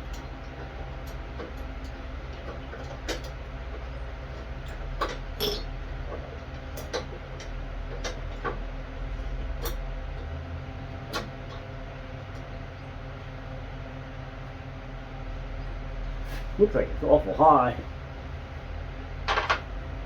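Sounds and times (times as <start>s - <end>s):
steady low hum: 0.0s - 20.0s
hand tools and metal parts clicking: 4.6s - 6.2s.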